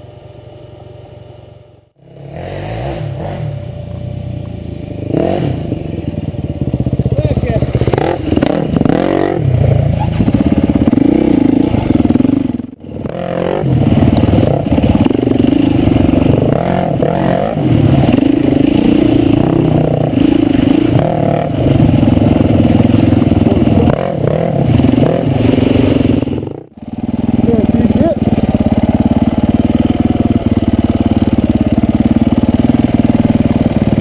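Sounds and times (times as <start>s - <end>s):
dirt bike engine revving: 1.5s - 34.0s.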